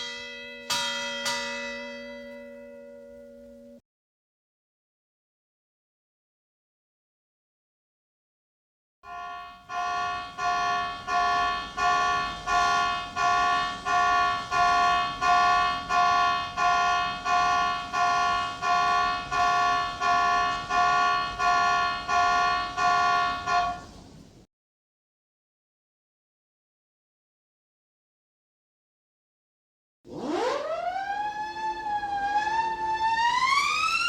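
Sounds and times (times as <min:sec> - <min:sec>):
pitched warning signal tones: 0:00.0 - 0:03.8, 0:09.1 - 0:24.0, 0:30.1 - 0:34.0.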